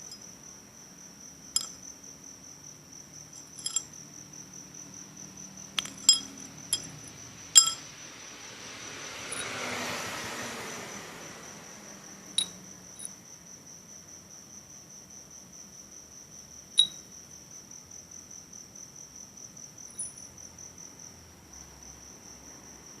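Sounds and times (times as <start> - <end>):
cricket trilling: 0.0 - 23.0
sharp metallic clinks: 1.6 - 1.8, 3.4 - 4.0, 5.8 - 7.9, 12.4 - 13.1.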